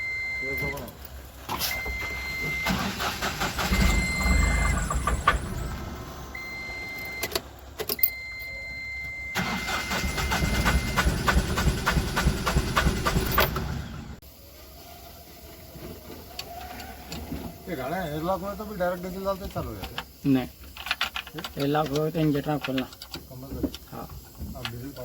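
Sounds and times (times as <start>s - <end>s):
diesel engine cranking and catching: 0.0s - 8.4s, 9.3s - 18.7s
high beeping tone: 3.6s - 7.3s, 8.0s - 9.4s.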